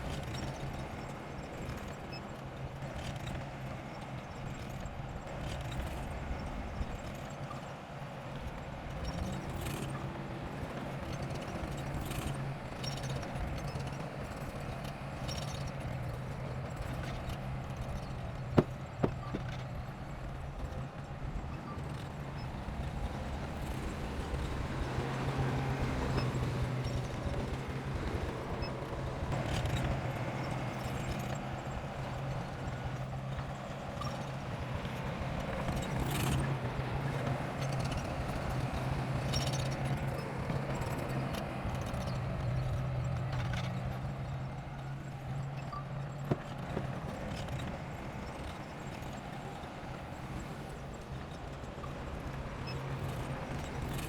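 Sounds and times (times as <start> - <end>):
machinery knocks and clatter: 18.5 - 19.6
diesel engine hum: 21.8 - 54.0.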